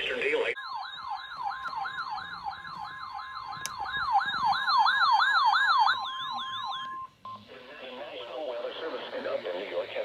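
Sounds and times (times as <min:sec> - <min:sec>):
electronic warbling siren: 0:00.6 - 0:07.1.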